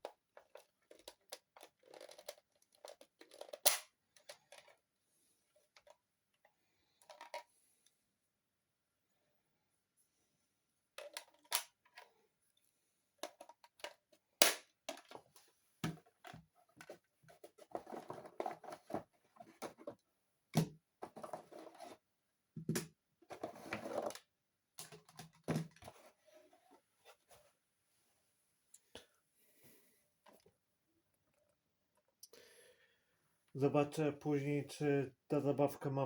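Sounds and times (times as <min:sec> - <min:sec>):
plastic parts clicking: 0:00.4 - 0:04.8.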